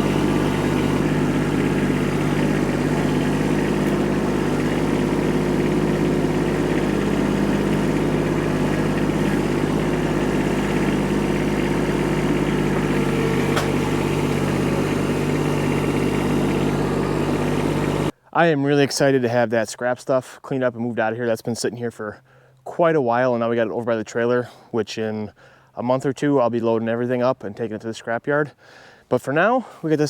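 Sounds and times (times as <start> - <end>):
tractor diesel engine running: 0.0 - 18.1
sharp click: 13.5 - 13.8.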